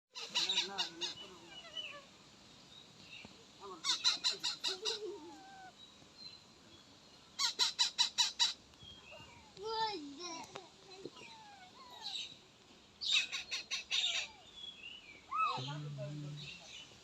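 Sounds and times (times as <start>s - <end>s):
parrot calling: 0.2s - 2.0s, 3.8s - 5.8s, 7.4s - 8.6s, 13.0s - 14.5s.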